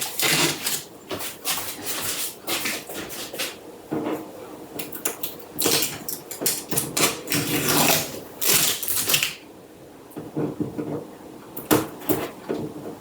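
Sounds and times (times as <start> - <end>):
plastic packaging crinkling: 0.0 - 3.6, 5.2 - 9.4.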